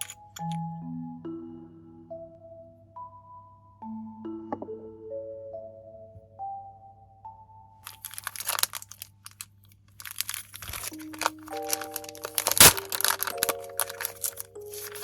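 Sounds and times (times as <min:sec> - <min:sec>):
light background music: 0:00.0 - 0:09.4, 0:10.1 - 0:15.0
packaging crinkling: 0:07.9 - 0:15.0.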